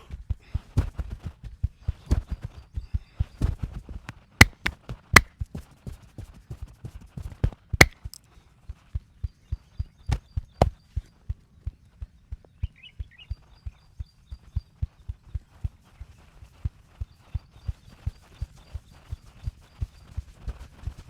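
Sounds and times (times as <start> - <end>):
wooden sticks cracking: 4.4 - 5.3
dull thumps of stick massage: 4.4 - 5.7.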